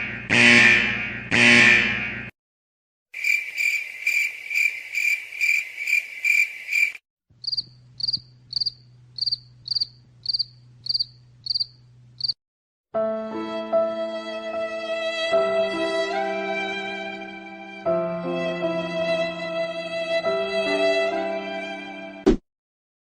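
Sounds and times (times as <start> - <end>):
low cricket-like chirping: 3.2 - 12.4
high thin chirping: 6.3 - 12.4.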